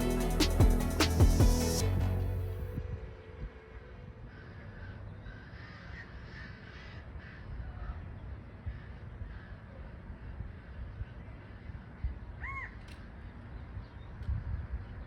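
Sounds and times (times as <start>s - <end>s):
low rumble: 0.0s - 3.6s.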